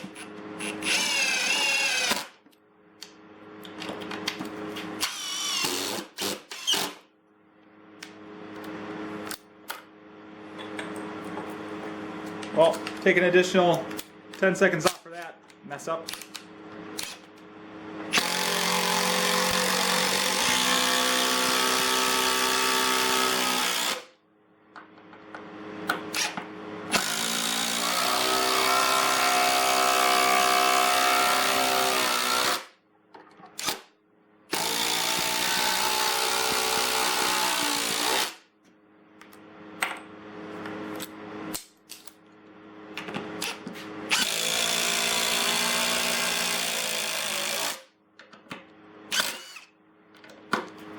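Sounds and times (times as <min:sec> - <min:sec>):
impact driver hammering screws: 0:18.1 - 0:24.0, 0:34.5 - 0:38.4, 0:43.4 - 0:47.8, 0:49.1 - 0:49.7.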